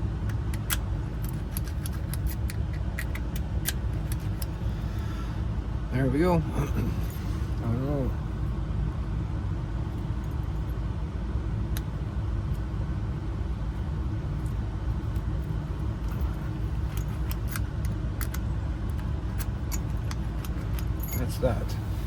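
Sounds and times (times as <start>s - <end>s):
steady low rumble: 0.0s - 22.0s
keys and lock parts jingling: 0.5s - 4.6s, 6.6s - 7.6s, 15.9s - 22.0s.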